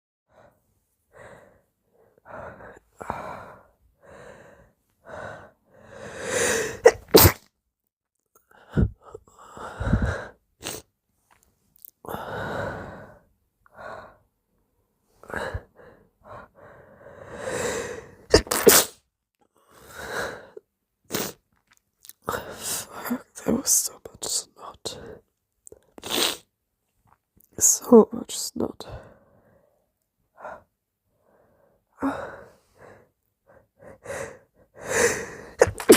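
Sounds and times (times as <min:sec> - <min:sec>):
person sneezing wetly: 0:06.7 - 0:07.5, 0:18.3 - 0:19.0, 0:35.6 - 0:35.9.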